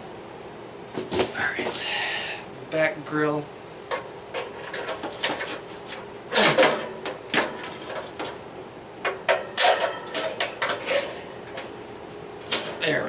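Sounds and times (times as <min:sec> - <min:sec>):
fan grille clattering: 0:02.7 - 0:13.0.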